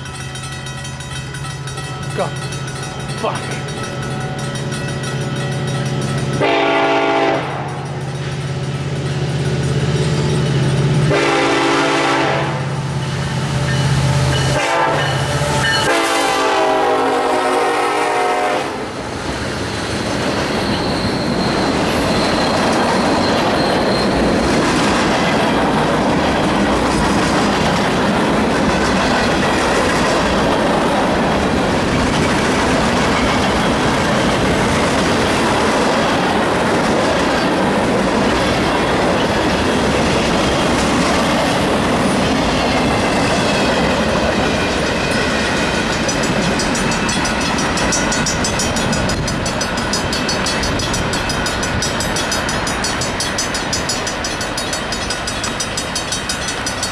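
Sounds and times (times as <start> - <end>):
locomotive air horn: 6.4 - 7.7, 11.1 - 12.7, 13.5 - 18.9
wheel squeal: 19.8 - 24.6.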